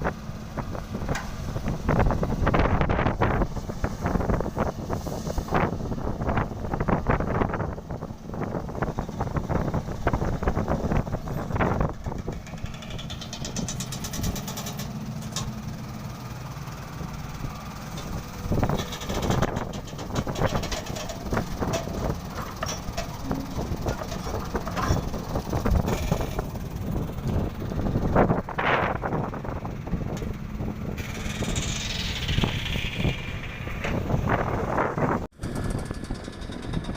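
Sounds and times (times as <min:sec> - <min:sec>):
excavator diesel engine running: 0:00.0 - 0:36.9
soil loading knocks: 0:17.8 - 0:26.5.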